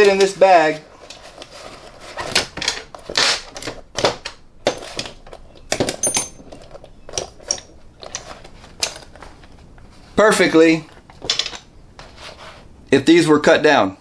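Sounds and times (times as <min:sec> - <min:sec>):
metal hand tools clinking: 0:04.6 - 0:09.6.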